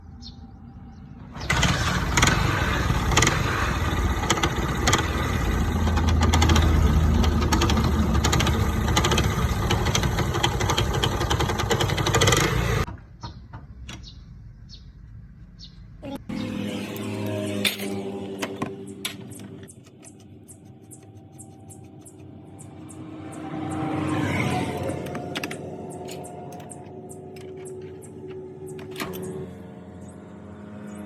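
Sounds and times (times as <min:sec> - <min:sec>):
motorcycle engine idling: 0:01.5 - 0:12.9.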